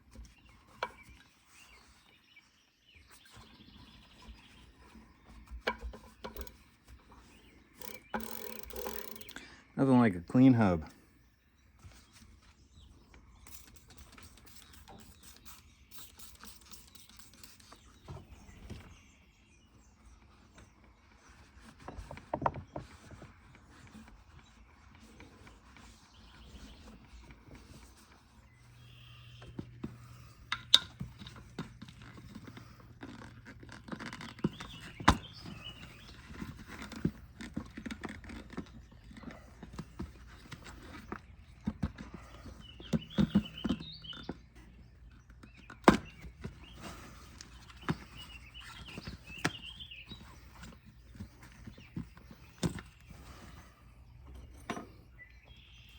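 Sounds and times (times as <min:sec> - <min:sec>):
tools clicking and clanking: 0:05.7 - 0:06.6, 0:07.7 - 0:09.4.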